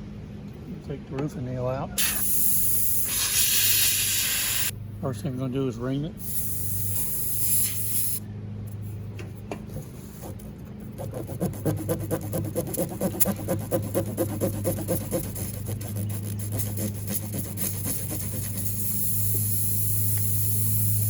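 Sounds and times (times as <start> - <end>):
steady low hum: 0.0 - 21.0
reamer rasping in tire: 9.9 - 21.0.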